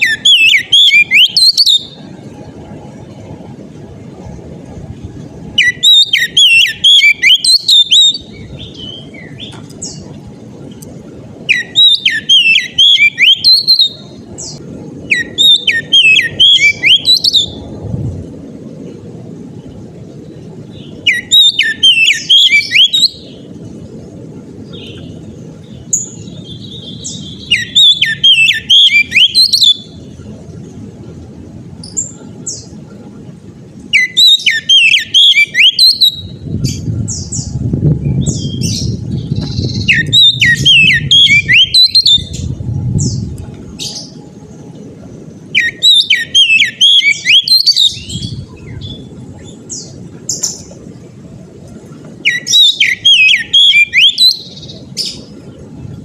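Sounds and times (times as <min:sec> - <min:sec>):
bird singing whistled notes: 0:00.0 - 0:02.1, 0:05.5 - 0:10.1, 0:11.4 - 0:17.7, 0:20.7 - 0:23.5, 0:24.6 - 0:30.1, 0:31.8 - 0:32.8, 0:33.9 - 0:44.6, 0:45.3 - 0:50.7, 0:52.2 - 0:55.3
low background hum: 0:00.0 - 0:56.0.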